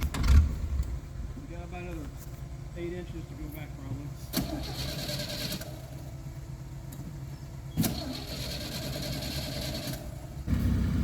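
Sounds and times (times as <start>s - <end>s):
low engine sound: 0.0s - 11.0s
electric starter whirring: 4.3s - 6.1s, 7.8s - 11.0s.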